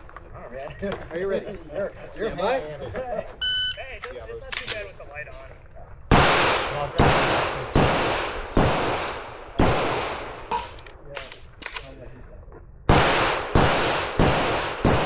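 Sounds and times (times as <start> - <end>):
pistol shots echoing: 6.1 - 10.7, 12.9 - 15.0.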